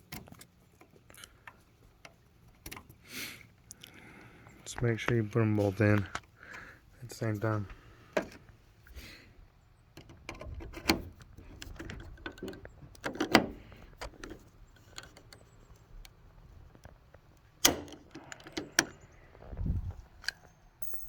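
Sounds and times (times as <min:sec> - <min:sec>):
small hardware clicking and clinking: 0:20.2 - 0:21.0.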